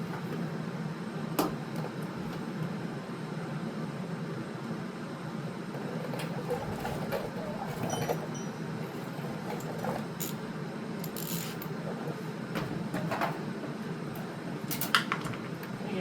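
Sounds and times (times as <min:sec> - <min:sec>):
metal tools clinking: 0:09.5 - 0:10.4, 0:11.0 - 0:11.7.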